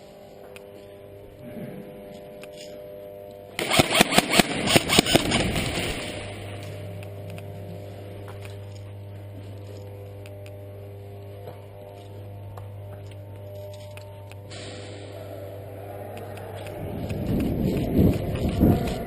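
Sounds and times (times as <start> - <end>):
airsoft gun rapid pops: 3.6 - 6.0
hiss: 14.5 - 15.2.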